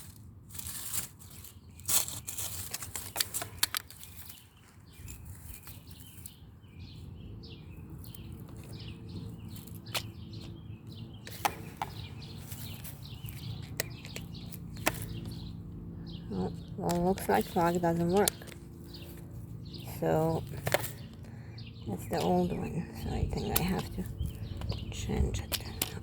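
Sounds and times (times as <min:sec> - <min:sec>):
steady low hum: 0:06.9 - 0:26.0.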